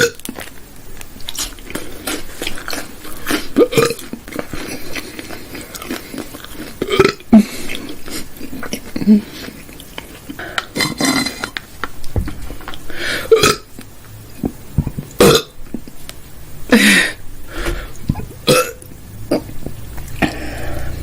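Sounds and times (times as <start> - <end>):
woman burping loudly: 0.0 - 0.3, 3.6 - 4.2, 6.8 - 7.8, 10.6 - 11.6, 13.0 - 13.7, 15.2 - 15.6, 18.0 - 19.6.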